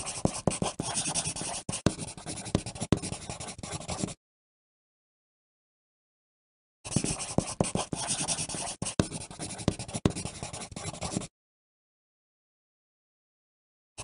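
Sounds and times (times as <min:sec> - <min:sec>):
pencil writing on paper: 0:00.0 - 0:04.2, 0:06.9 - 0:11.3.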